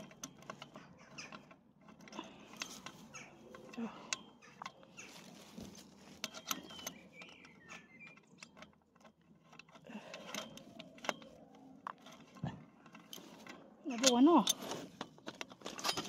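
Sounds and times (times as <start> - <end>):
metal parts clicking and scraping: 0.0 - 16.0.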